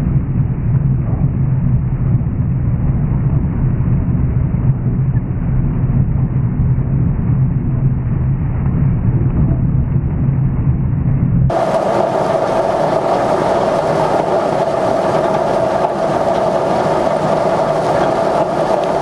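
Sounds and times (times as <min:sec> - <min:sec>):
combine harvester engine droning: 0:11.5 - 0:19.0.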